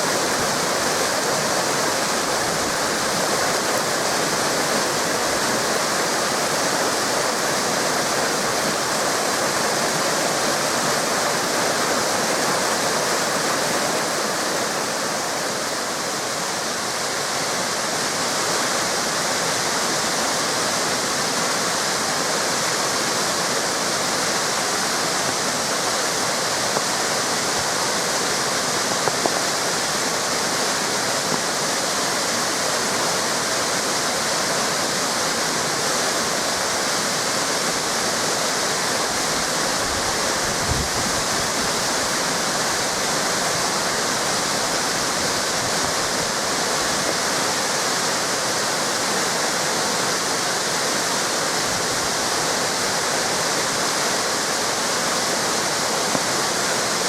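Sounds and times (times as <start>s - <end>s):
river water rushing: 0.0s - 57.0s
waterfall cascading: 0.0s - 57.0s.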